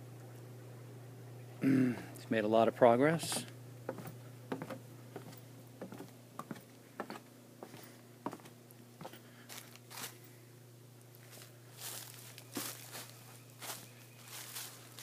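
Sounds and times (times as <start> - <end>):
steady low hum: 0.0 - 15.0
small taps and scuffs: 3.2 - 9.8
faint footsteps: 3.2 - 10.3, 11.1 - 15.0.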